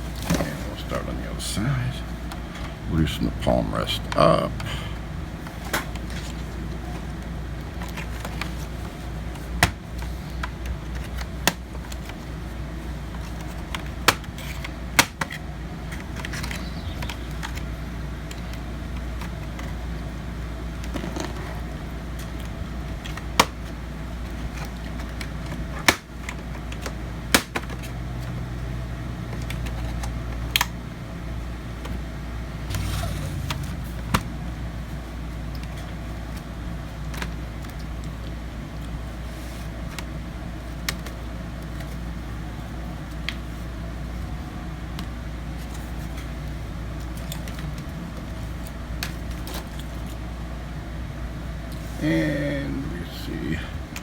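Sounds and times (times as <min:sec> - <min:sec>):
low hum: 0:32.5 - 0:35.2.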